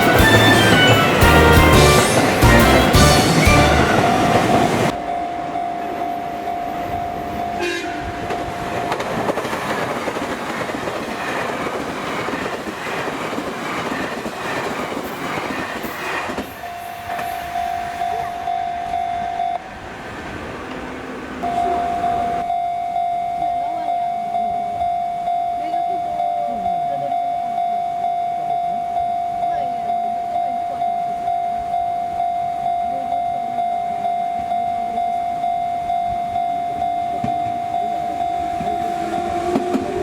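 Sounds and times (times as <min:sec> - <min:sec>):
train horn: 0:00.0 - 0:05.1, 0:06.8 - 0:08.7, 0:38.1 - 0:40.0
level crossing warning bell: 0:00.0 - 0:12.8, 0:16.6 - 0:40.0
electric train passing: 0:00.0 - 0:40.0
wheels clattering over rail joints: 0:07.2 - 0:17.4.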